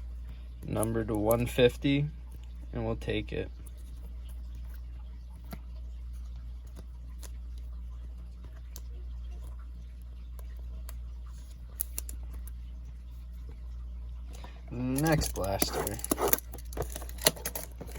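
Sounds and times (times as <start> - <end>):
steady low hum: 0.0 - 17.9
trading cards tapping and rustling: 14.9 - 17.9.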